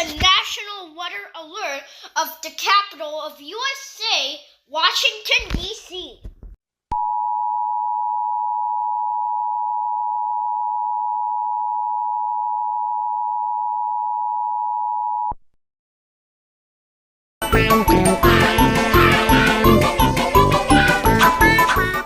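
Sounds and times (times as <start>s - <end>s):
music: 17.4s - 22.0s.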